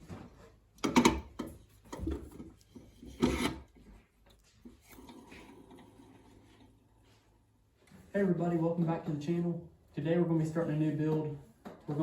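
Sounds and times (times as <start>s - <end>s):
knocks and scrapes of objects: 0.0s - 4.8s.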